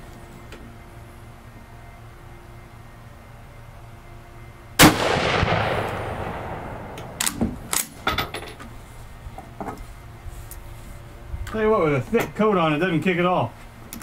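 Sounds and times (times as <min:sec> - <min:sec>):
rifle shot: 0:04.8 - 0:08.0
rifle bolt metallic clicks: 0:06.9 - 0:08.1.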